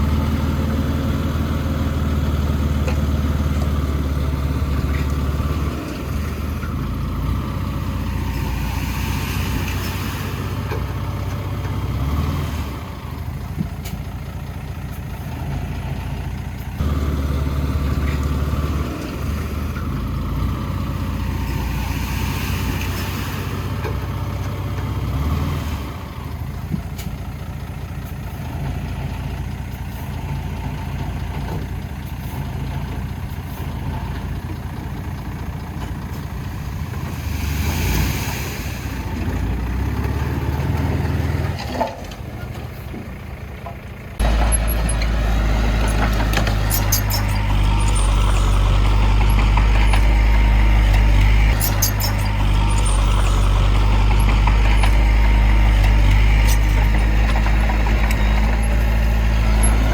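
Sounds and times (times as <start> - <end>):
heavy diesel machinery engines: 0.0 - 59.9.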